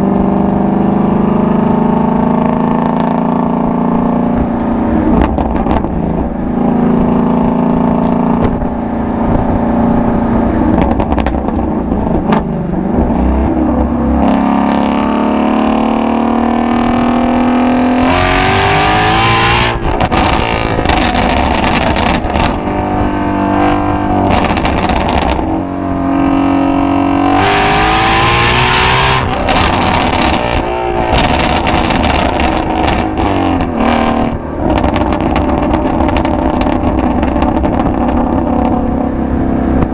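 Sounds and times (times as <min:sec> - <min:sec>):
car engine and exhaust accelerating: 0:00.0 - 0:39.9.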